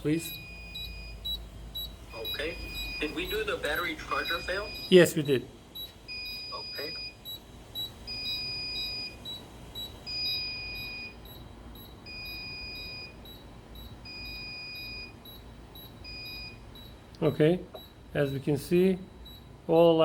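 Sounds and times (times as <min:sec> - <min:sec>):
longer lower alarm beep: 0:00.1 - 0:05.2, 0:05.8 - 0:17.0, 0:17.8 - 0:19.9
short high alarm beep: 0:00.1 - 0:05.2, 0:05.8 - 0:17.0, 0:17.8 - 0:18.6.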